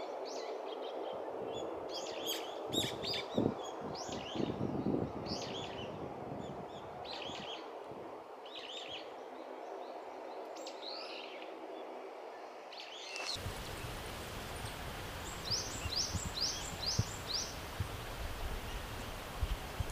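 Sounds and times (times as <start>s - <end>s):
steady background hiss: 0.0s - 19.9s
birds calling with shrill chirps: 13.0s - 17.8s.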